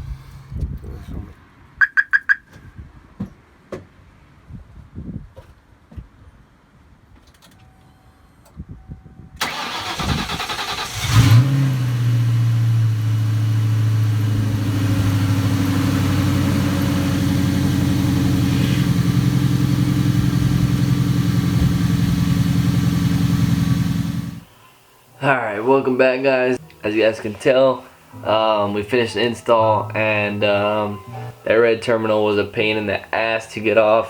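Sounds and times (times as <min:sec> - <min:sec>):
car engine cranking and idling: 0:00.0 - 0:01.2, 0:09.4 - 0:24.5.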